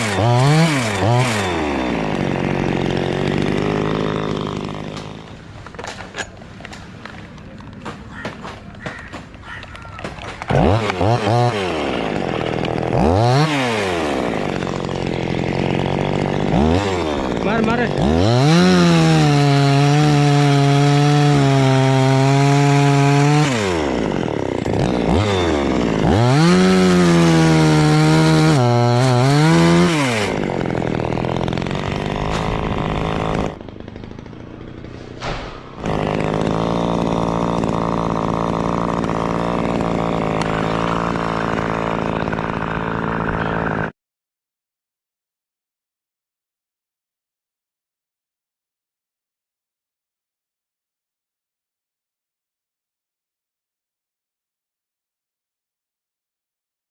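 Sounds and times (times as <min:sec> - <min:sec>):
two-stroke chainsaw revving: 0:00.0 - 0:06.4, 0:07.1 - 0:43.9.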